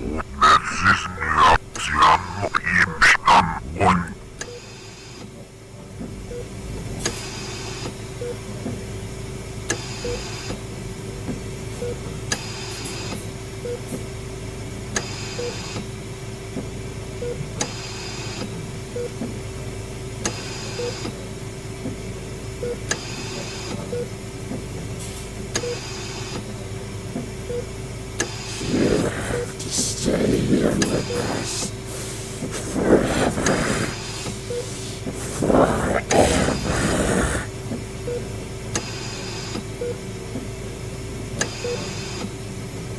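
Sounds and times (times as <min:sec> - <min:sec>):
steady hum: 0:00.0 - 0:04.5, 0:28.3 - 0:37.6.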